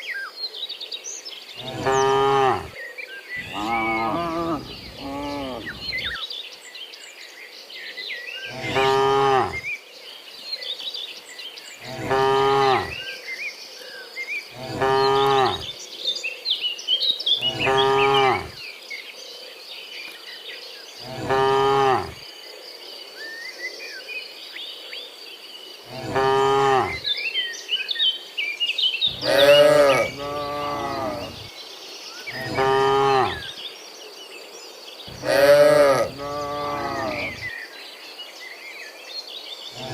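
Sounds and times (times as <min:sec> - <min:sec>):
cattle mooing: 0:01.6 - 0:02.8, 0:03.4 - 0:06.2, 0:08.5 - 0:09.6, 0:11.8 - 0:13.0, 0:14.6 - 0:15.7, 0:17.4 - 0:18.6, 0:21.1 - 0:22.2, 0:25.9 - 0:27.0, 0:29.1 - 0:31.5, 0:32.4 - 0:33.4, 0:35.1 - 0:37.5.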